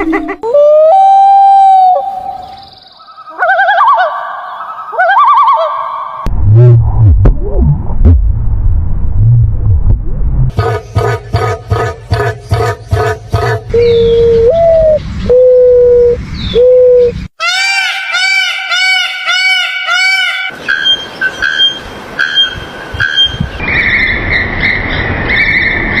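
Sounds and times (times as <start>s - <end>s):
high piping bird notes: 10.5s - 24.7s
low hooting bird call: 10.6s - 25.8s.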